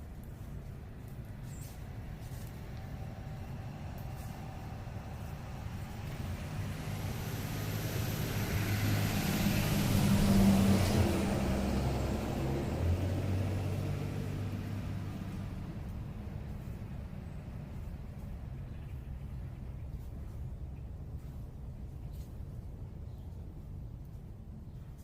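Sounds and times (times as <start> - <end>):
vehicle passing by: 1.5 - 20.3.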